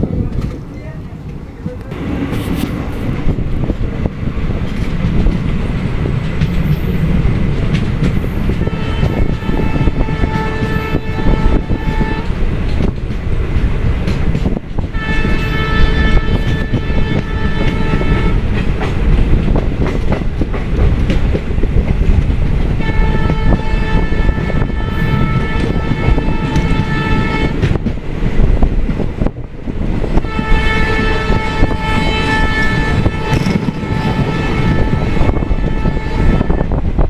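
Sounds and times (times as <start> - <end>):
train rumbling on track: 0.0 - 37.0
train horn blasts: 8.5 - 12.4, 14.9 - 18.5, 22.8 - 27.7, 30.2 - 36.9.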